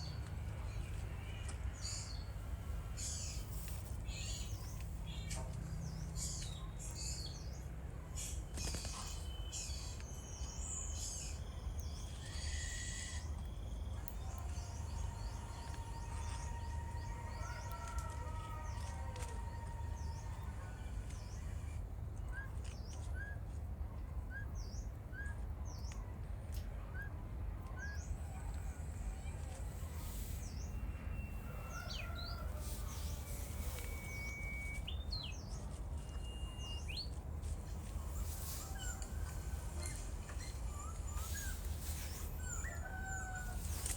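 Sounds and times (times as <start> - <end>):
birds chirping and calling: 30.0 - 43.9.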